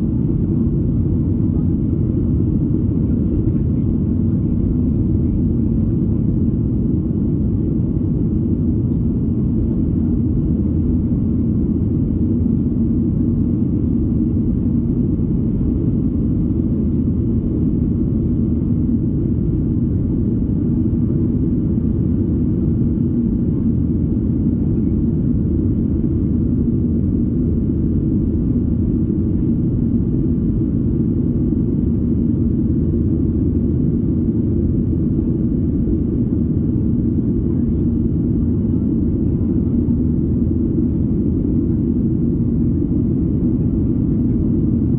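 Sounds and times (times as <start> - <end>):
airplane cabin engine rumble: 0.0 - 44.9.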